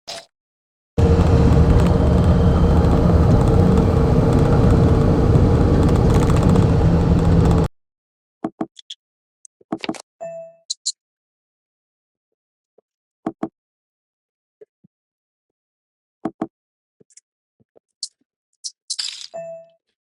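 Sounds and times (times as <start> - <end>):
engine running with low hum: 1.0 - 7.7.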